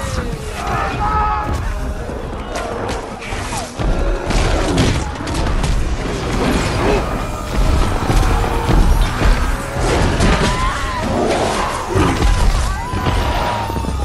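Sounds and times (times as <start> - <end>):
deep booms: 3.8 - 13.4
low rumble: 5.4 - 13.2.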